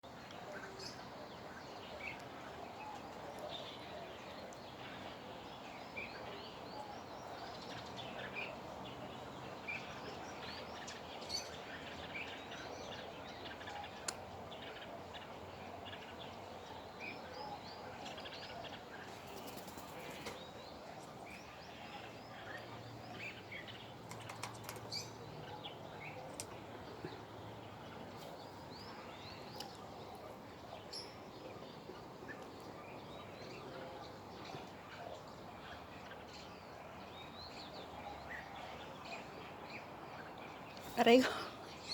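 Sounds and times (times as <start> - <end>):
birds chirping: 0.0 - 41.9
sharp clicks: 24.1 - 25.0.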